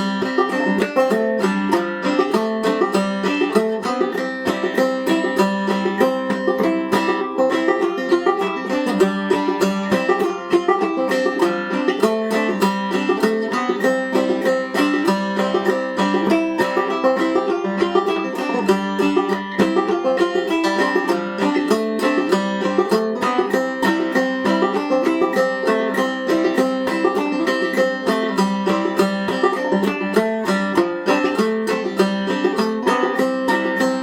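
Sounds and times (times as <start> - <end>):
clawhammer banjo playing: 0.0 - 34.0.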